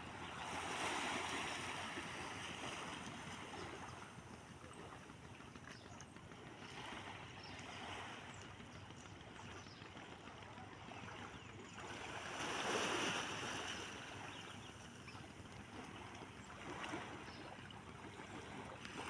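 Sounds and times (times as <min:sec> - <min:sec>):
sea waves washing ashore: 0:00.0 - 0:03.9, 0:11.9 - 0:15.9.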